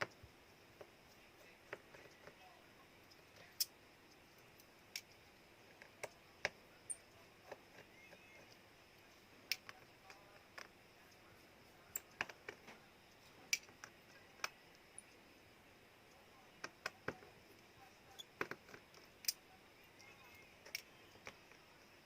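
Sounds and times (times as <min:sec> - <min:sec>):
tools and plastic parts clicking: 0:18.1 - 0:19.4, 0:20.0 - 0:21.6.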